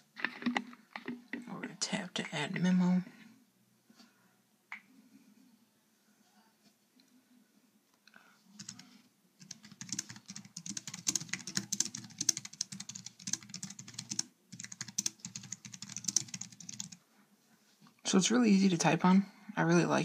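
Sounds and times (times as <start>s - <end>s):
fast keyboard typing clicks: 8.6s - 8.8s, 9.4s - 17.0s.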